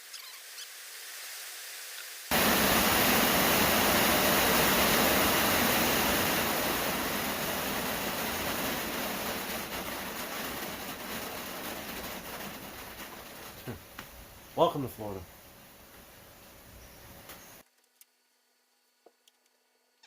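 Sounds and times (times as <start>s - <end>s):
heavy rain pouring: 2.3s - 15.8s.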